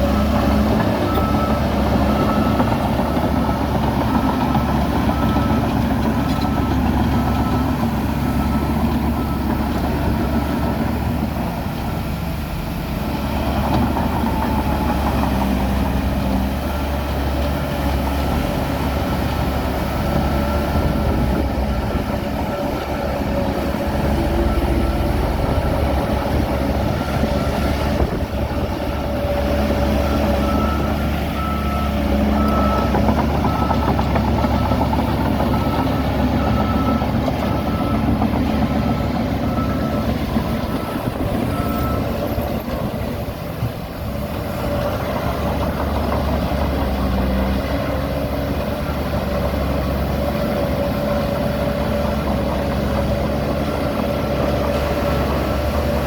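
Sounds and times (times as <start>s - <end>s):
heavy diesel machinery running: 0.0s - 56.0s
reversing alarm beeping: 0.1s - 10.7s, 18.6s - 43.1s.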